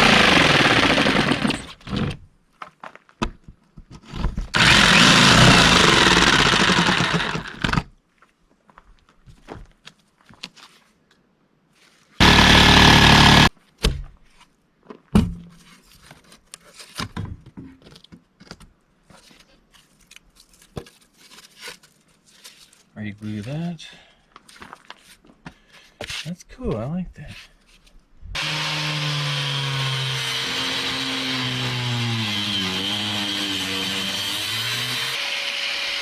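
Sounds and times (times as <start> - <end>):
handheld power tool running: 0.0 - 1.8, 4.6 - 7.9, 12.2 - 13.5, 28.4 - 36.0.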